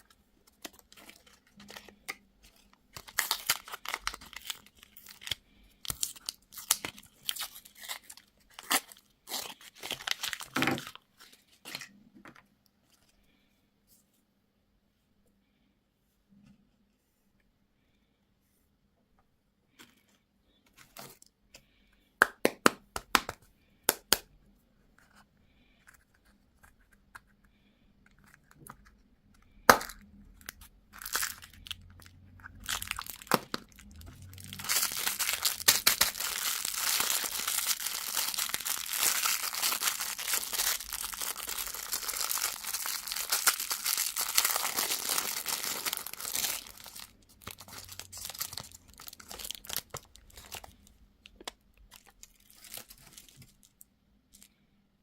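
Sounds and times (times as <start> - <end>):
sweets crunching and crackling: 0.0 - 11.9, 29.7 - 54.5.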